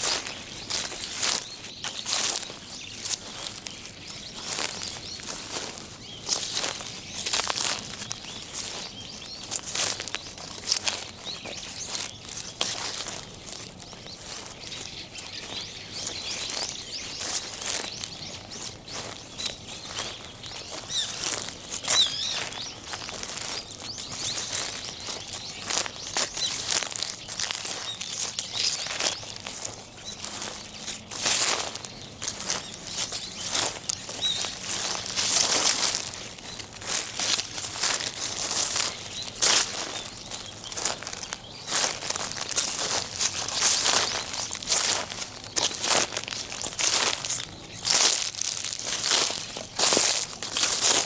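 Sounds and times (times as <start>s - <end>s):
footsteps crunching dry leaves: 0.0s - 51.0s
small birds chirping: 0.0s - 51.0s.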